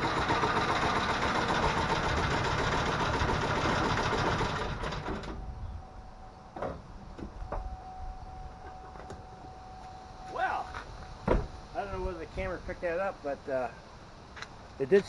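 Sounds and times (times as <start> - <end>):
engine running: 0.0 - 14.7
faint steady tone: 5.4 - 14.1.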